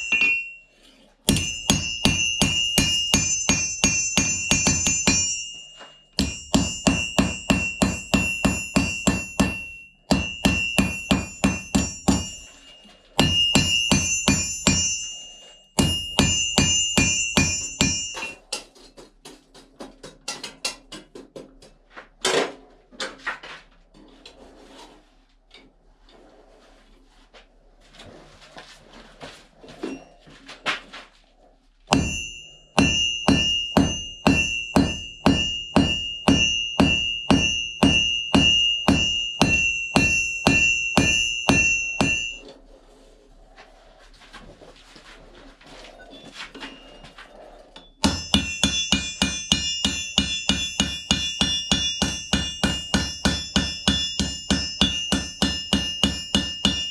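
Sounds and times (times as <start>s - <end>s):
hammer striking anvil: 0.0s - 0.6s, 1.3s - 18.4s, 31.9s - 42.5s, 47.8s - 56.9s.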